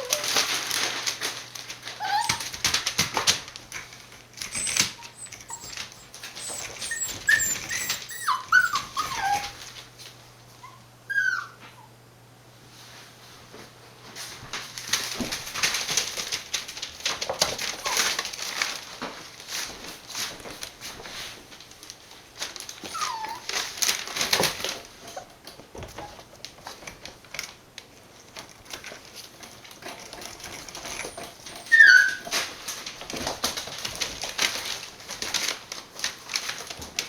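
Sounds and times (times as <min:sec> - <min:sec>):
puppies whimpering and yipping: 0:00.0 - 0:00.5, 0:02.0 - 0:02.6, 0:04.4 - 0:09.7, 0:10.6 - 0:12.0, 0:22.8 - 0:23.6, 0:30.8 - 0:32.4
quick clicks and rustles: 0:00.0 - 0:10.2, 0:14.0 - 0:37.0.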